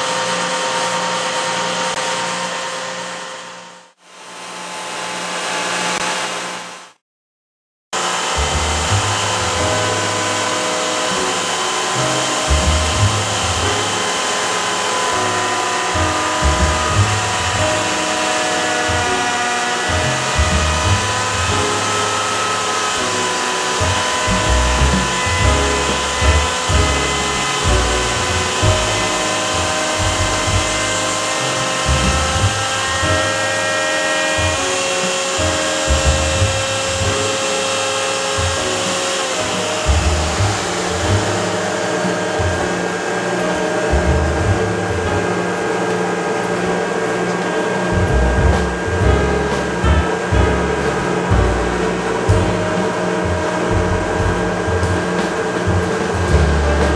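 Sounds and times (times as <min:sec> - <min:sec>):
motor hums: 0:08.0 - 0:56.9
router spindle whining: 0:08.0 - 0:56.9
low cutting rumbles: 0:08.1 - 0:33.5, 0:34.4 - 0:37.6, 0:38.2 - 0:42.8, 0:43.8 - 0:45.4, 0:47.9 - 0:56.9.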